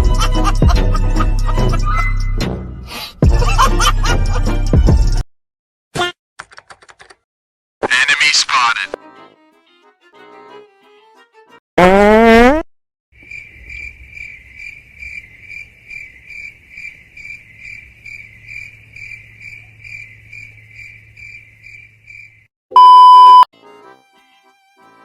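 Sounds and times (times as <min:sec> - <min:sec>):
cricket chirp effect: 0:13.2 - 0:22.5
loud high beep: 0:22.7 - 0:23.5.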